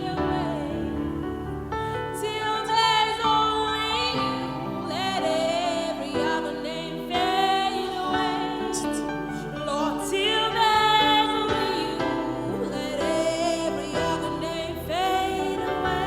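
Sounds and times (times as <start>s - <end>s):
melismatic worship singing: 0.0s - 16.0s.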